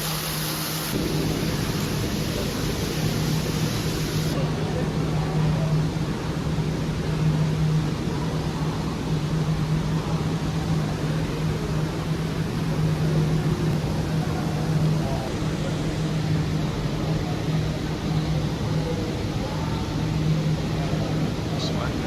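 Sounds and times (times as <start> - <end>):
even rushing noise: 0.0 - 4.4
machine hum: 0.0 - 4.4.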